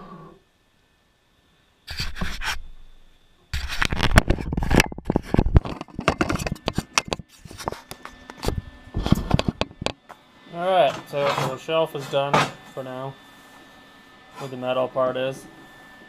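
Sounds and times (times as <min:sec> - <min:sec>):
pieces knocking and scraping: 0:03.6 - 0:09.9, 0:10.9 - 0:12.6.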